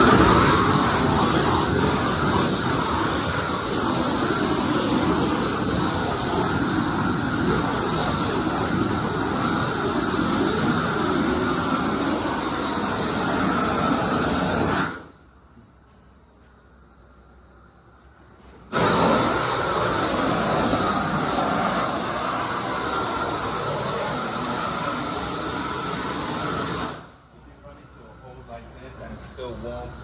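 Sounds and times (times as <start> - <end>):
heat gun blasting flame and air: 0.0 - 15.2, 18.6 - 27.2.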